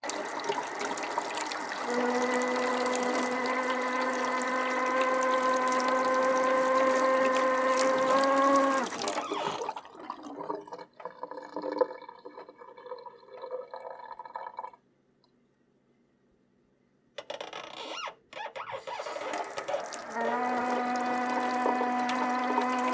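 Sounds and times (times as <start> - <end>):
water dripping and trickling: 0.0 - 9.8, 19.1 - 22.9
tap water running: 0.0 - 14.8, 18.6 - 22.9
tap humming tone: 19.4 - 22.9.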